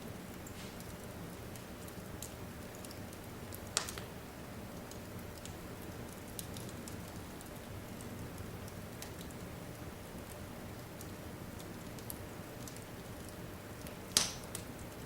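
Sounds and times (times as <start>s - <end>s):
wood fire crackling: 0.0s - 15.0s
loud pop from fire: 14.2s - 14.5s.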